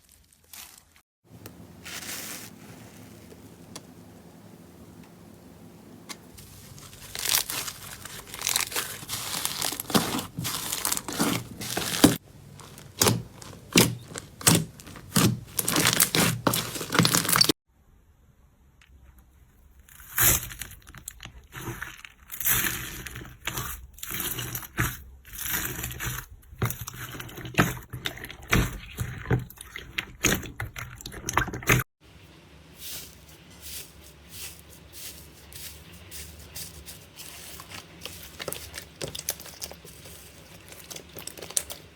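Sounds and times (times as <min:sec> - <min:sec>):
slime crackling and popping: 0:06.3 - 0:17.5, 0:37.6 - 0:41.9.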